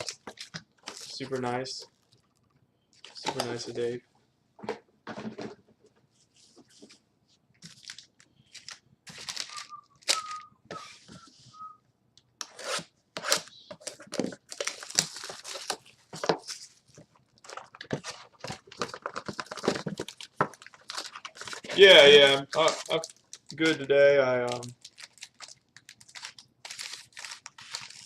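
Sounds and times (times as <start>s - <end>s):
packaging crinkling and tearing: 0.0s - 2.4s, 7.6s - 10.4s, 13.2s - 23.8s, 24.4s - 28.0s.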